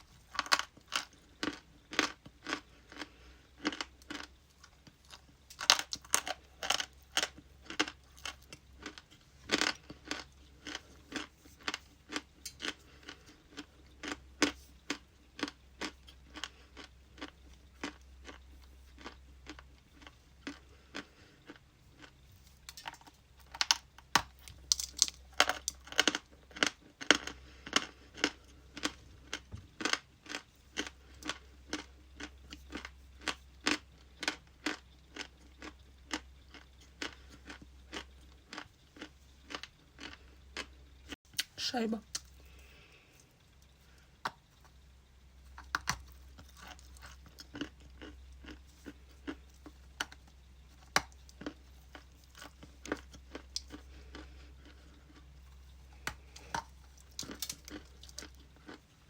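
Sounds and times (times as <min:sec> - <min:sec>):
person crunching ice: 0:22.0 - 0:28.9, 0:56.0 - 0:58.8.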